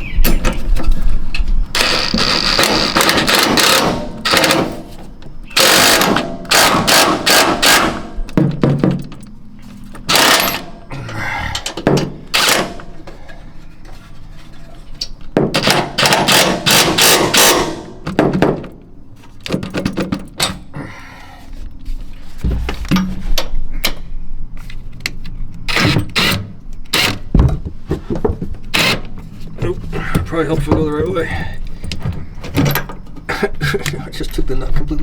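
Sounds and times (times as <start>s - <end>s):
metal knocks and clanks: 7.4s - 9.3s, 11.6s - 12.2s, 22.4s - 23.6s, 29.6s - 33.2s
thuds: 22.4s - 23.4s, 27.3s - 28.6s.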